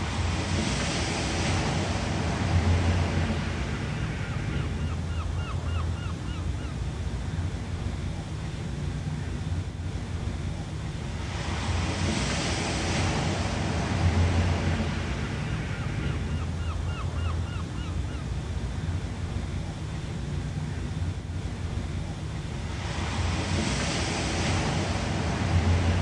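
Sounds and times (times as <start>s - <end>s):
ocean waves washing on shore: 0.0s - 26.0s
bird calling: 4.0s - 6.8s, 15.3s - 18.3s.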